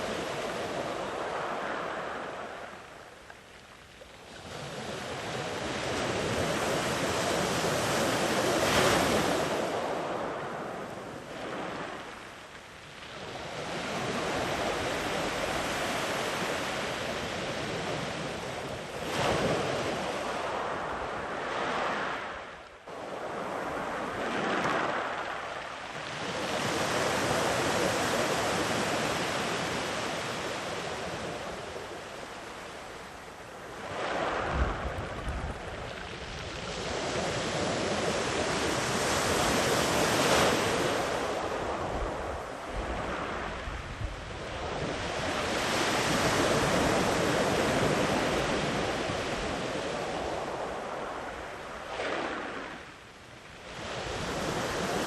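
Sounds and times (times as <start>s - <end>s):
sea waves washing on beach: 0.0s - 55.0s
wind buffeting microphone: 33.5s - 53.0s.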